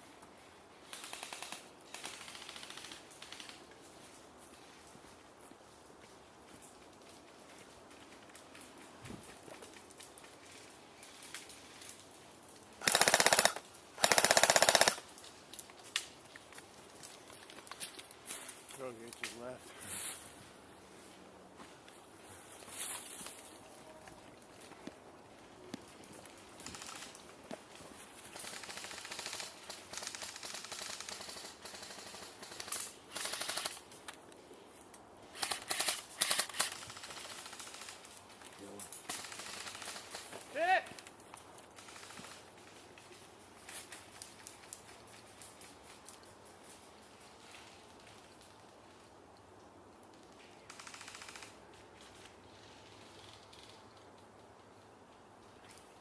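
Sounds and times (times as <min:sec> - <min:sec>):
airsoft rifle full-auto bursts: 0:12.8 - 0:15.0, 0:28.4 - 0:33.8, 0:39.1 - 0:40.2, 0:50.7 - 0:51.5.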